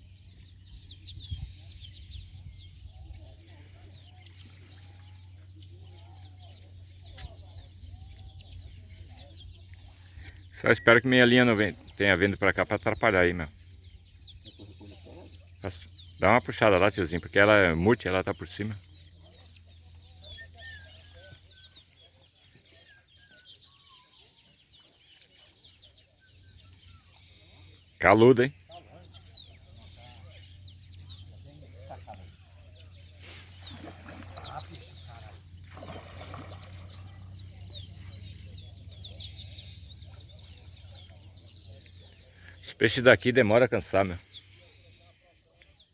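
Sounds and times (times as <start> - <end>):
birds chirping: 0.0 - 45.9.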